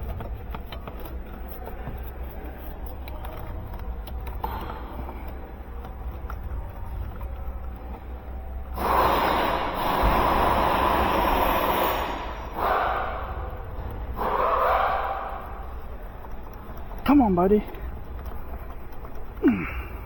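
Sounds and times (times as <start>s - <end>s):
low steady hum: 0.0s - 20.0s
person exhaling heavily: 19.4s - 20.0s.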